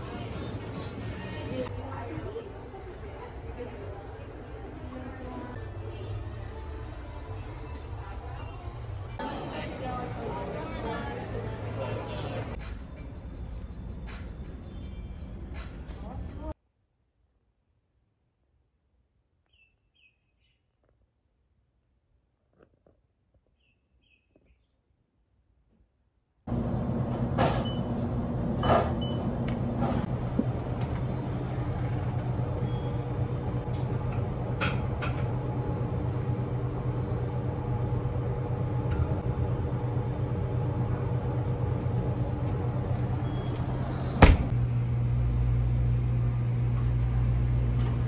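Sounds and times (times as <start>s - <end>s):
vehicle interior drone: 26.5s - 48.0s.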